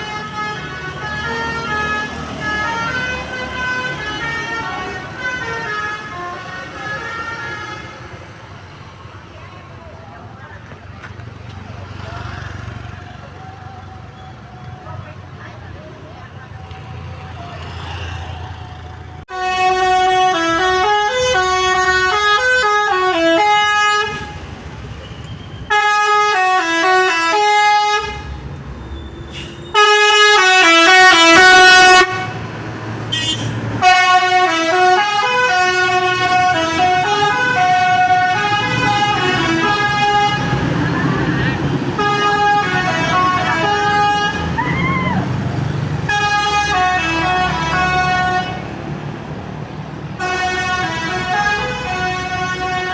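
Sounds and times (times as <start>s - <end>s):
multi-tone musical bus horn: 0.0s - 8.3s, 19.3s - 24.7s, 25.6s - 28.4s, 29.3s - 44.8s, 46.0s - 48.8s, 50.1s - 52.9s.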